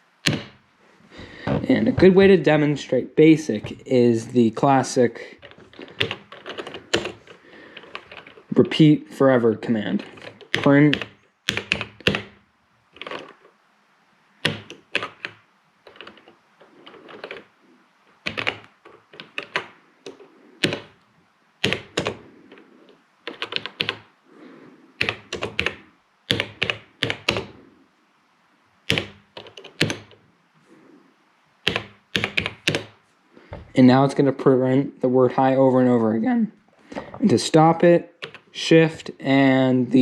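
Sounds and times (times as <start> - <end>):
keyboard keys clicking: 5.4 - 8.4, 14.4 - 17.5, 18.2 - 20.9, 21.6 - 22.6, 23.3 - 24.0, 25.0 - 27.5, 28.9 - 30.2, 31.6 - 32.9, 38.2 - 38.5.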